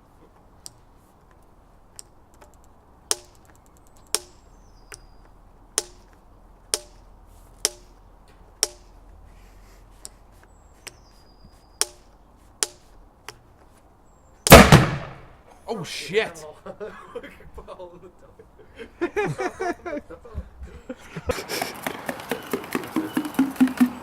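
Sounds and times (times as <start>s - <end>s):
spark igniter clicking: 2.0s - 5.1s
potato cannon bang: 14.5s - 15.3s.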